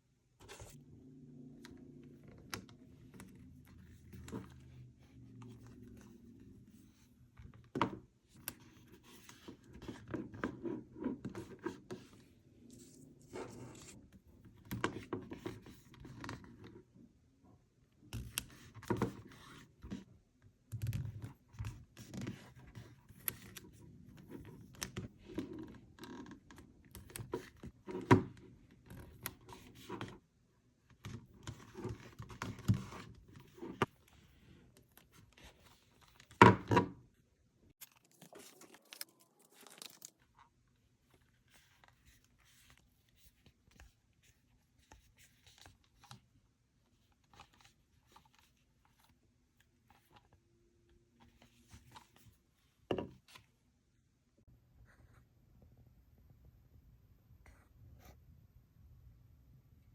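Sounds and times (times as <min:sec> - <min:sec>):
toys and packaging handled: 0:37.8 - 0:46.3.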